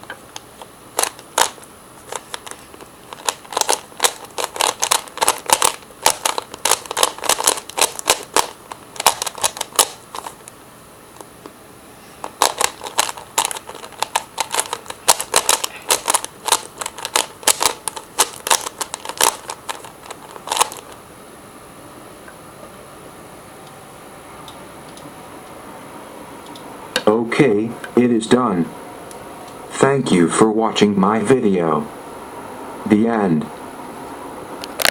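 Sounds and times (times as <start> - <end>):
puzzle cube plastic clicks: 0.6 - 10.4, 12.2 - 21.0.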